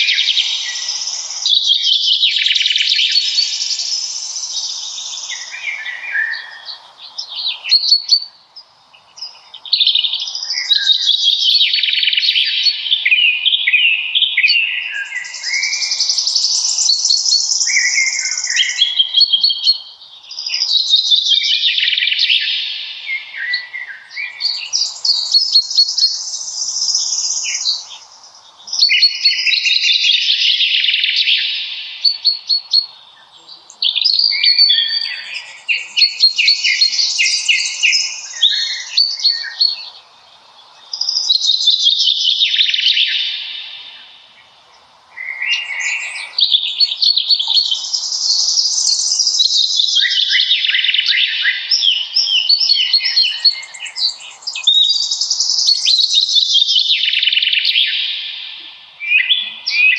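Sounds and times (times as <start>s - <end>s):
songbirds singing: 0.0s - 59.9s.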